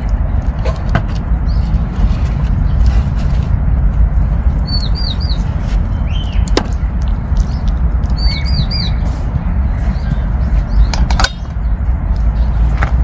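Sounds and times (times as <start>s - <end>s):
small birds chirping: 0.0s - 13.0s
steady low rumble: 0.0s - 13.0s.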